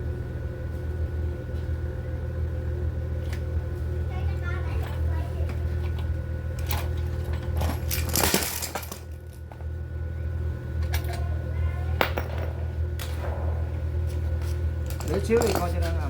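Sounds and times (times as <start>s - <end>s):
steady low hum: 0.0s - 16.0s
small metal parts clinking: 6.6s - 9.4s, 14.8s - 16.0s.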